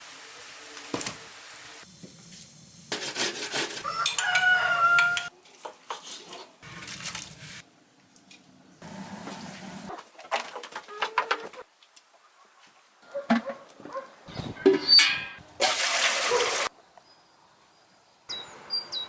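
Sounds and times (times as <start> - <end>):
pots and utensils clattering: 2.9 - 4.4, 14.4 - 15.4
rooster crowing: 3.8 - 5.3
farmyard sounds: 3.8 - 6.5, 8.8 - 16.6.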